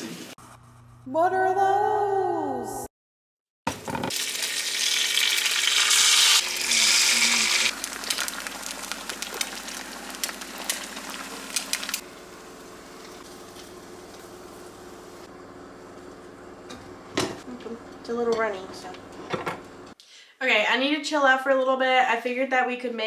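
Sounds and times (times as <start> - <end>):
food sizzling in frying pan: 3.7 - 15.3.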